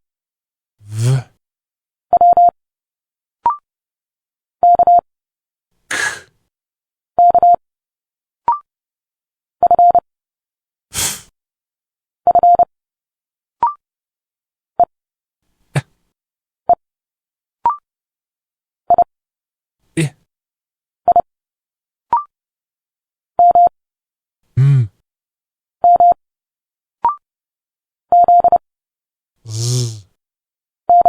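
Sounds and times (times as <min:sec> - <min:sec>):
person speaking consonant sounds: 0:00.8 - 0:01.3, 0:29.5 - 0:30.0.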